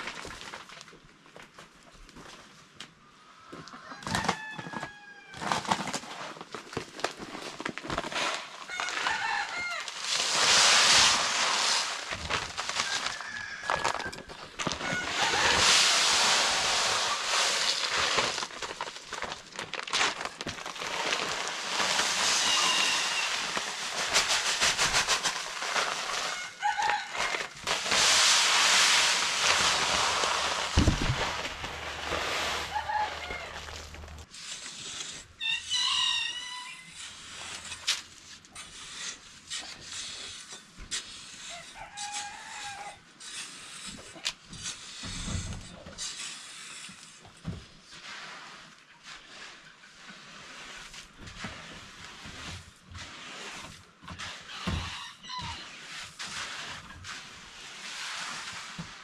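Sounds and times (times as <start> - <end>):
rooster crowing: 8.7 - 9.9, 12.8 - 16.0, 32.2 - 34.2.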